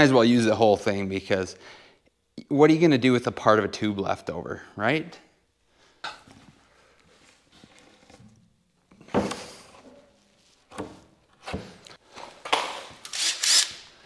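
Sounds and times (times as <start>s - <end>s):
thunks and knocks on wood: 9.1s - 9.5s.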